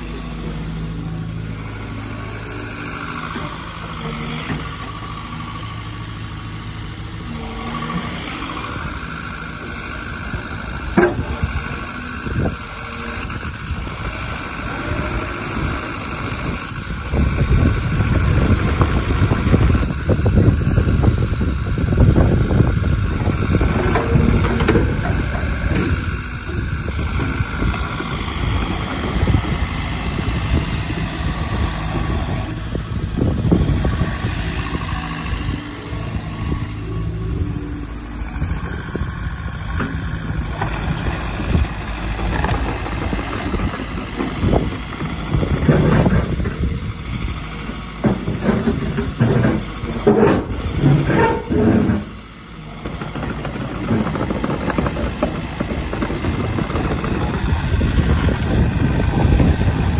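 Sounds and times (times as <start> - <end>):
excavator diesel engine running: 0.0 - 59.9
knocks and clanks: 10.9 - 11.4, 23.6 - 26.5, 42.1 - 46.8, 47.6 - 52.2, 52.8 - 57.6.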